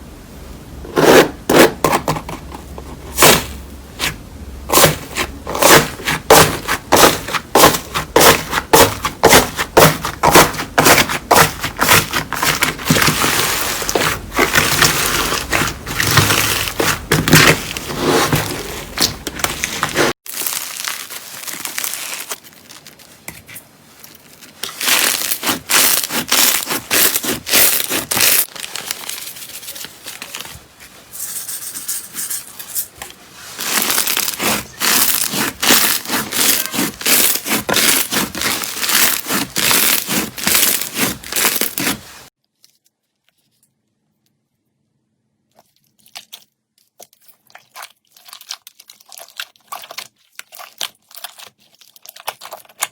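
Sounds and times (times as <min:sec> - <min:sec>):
slime crackling and popping: 0:18.9 - 0:23.0, 0:24.2 - 0:29.0, 0:33.6 - 0:41.9
slime being squeezed: 0:24.6 - 0:28.5, 0:33.6 - 0:42.0.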